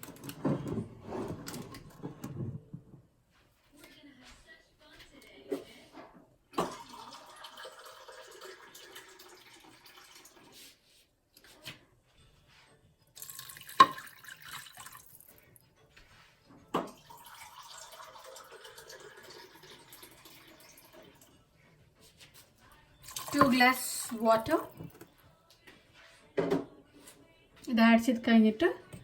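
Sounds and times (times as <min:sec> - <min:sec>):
tap water pouring into a glass: 0:06.6 - 0:10.6, 0:13.2 - 0:15.4, 0:16.8 - 0:21.3, 0:23.0 - 0:25.1.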